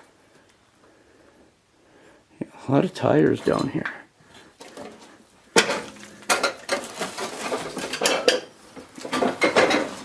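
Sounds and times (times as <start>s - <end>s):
loose junk clattering and clinking: 4.6s - 10.0s.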